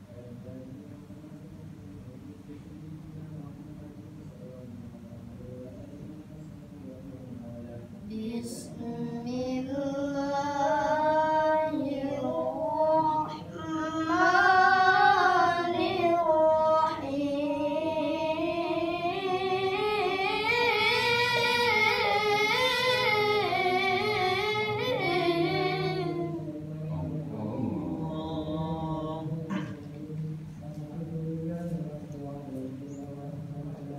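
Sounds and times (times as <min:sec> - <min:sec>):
child reciting melodically: 0:08.0 - 0:29.9.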